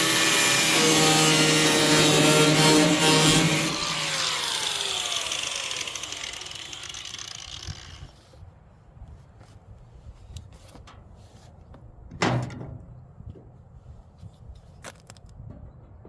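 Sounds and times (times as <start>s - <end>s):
power grinder on sheet metal: 0.0s - 8.1s.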